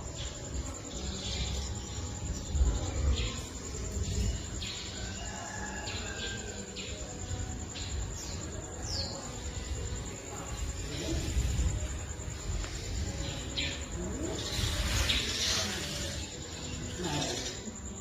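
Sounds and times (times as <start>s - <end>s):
wind rumble on microphone: 9.7s - 16.0s.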